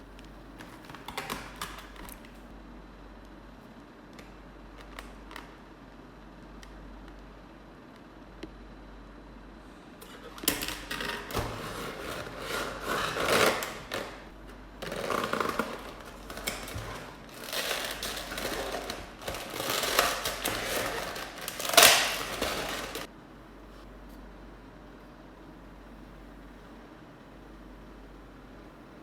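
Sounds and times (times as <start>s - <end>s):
packaging rustling and crinkling: 0.1s - 2.5s, 10.8s - 23.1s.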